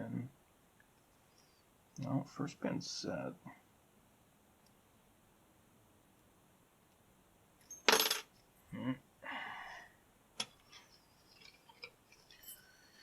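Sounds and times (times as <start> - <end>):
low vocal murmurs: 8.7 - 9.0.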